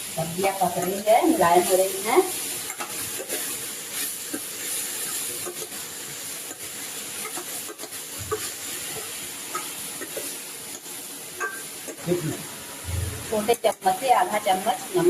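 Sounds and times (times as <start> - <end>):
vegetables sizzling in hot oil: 0.0 - 15.0
spoon scraping and tapping pan: 0.7 - 1.1, 2.6 - 3.6, 4.2 - 5.8, 6.4 - 12.0.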